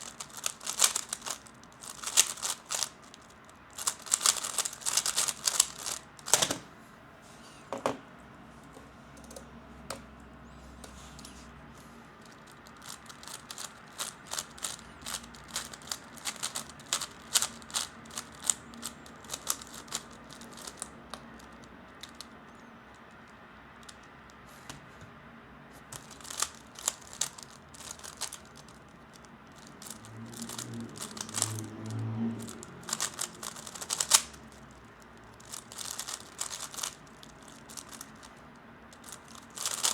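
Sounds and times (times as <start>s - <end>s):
puzzle cube plastic clicking: 0.0s - 6.6s, 12.3s - 24.4s, 26.0s - 31.7s, 32.4s - 39.9s.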